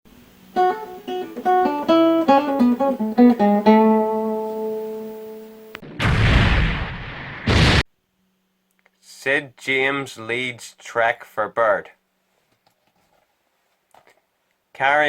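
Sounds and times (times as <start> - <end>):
plucked guitar melody: 0.5 - 5.8
loud noisy blast: 5.8 - 7.9.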